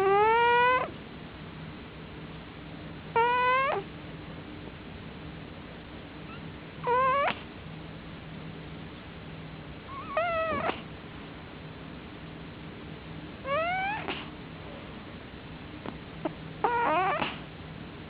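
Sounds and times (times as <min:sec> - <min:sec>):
cat snoring squeaky: 0:00.0 - 0:00.9, 0:03.2 - 0:03.9, 0:06.3 - 0:07.4, 0:09.9 - 0:10.9, 0:13.4 - 0:14.3, 0:16.2 - 0:17.5
faint low hum: 0:00.0 - 0:18.0.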